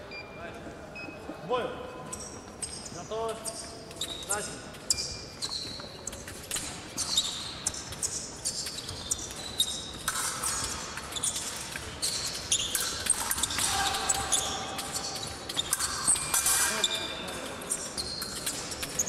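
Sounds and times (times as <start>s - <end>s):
fencing blades clicking: 6.1s - 19.0s.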